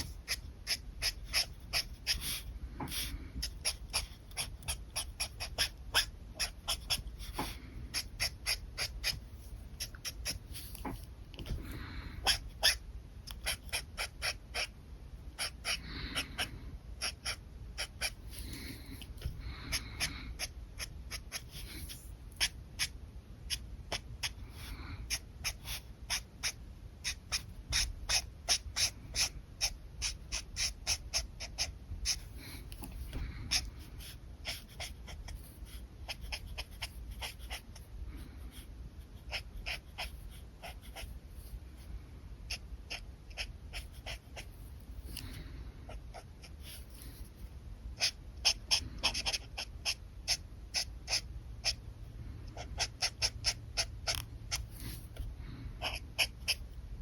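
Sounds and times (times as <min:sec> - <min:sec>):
marker scratching on paper: 0:00.0 - 0:14.7, 0:15.3 - 0:37.9, 0:38.5 - 0:41.5, 0:42.5 - 0:47.3, 0:48.0 - 0:51.8, 0:52.6 - 0:56.8.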